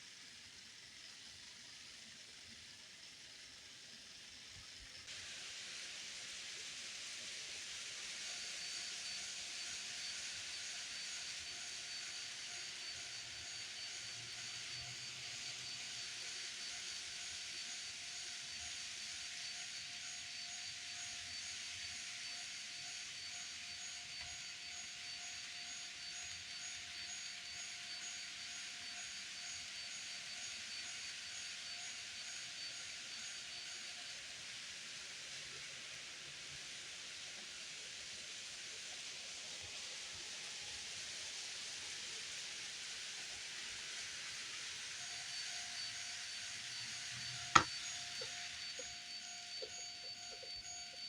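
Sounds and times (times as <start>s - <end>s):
constant hiss: 0.0s - 51.0s.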